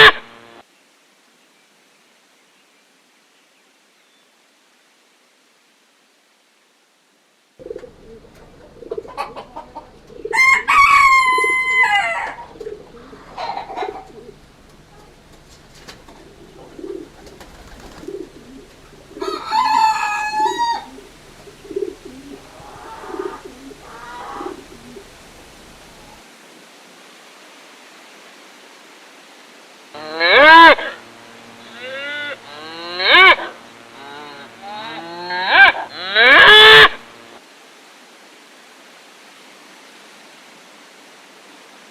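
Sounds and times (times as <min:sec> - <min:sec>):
chickens clucking: 0:07.6 - 0:26.2
rooster crowing: 0:09.1 - 0:14.3, 0:18.5 - 0:26.2, 0:30.0 - 0:37.2.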